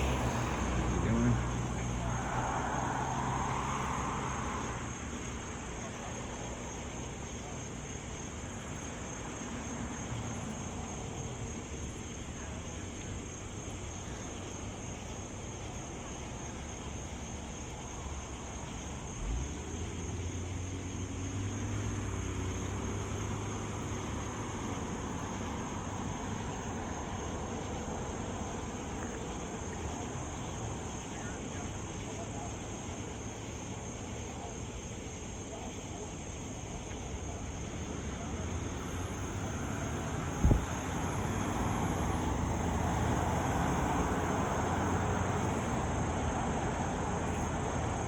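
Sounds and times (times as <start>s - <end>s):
heavy vehicle low drone: 0.0s - 6.4s
highway traffic road noise: 0.0s - 48.0s.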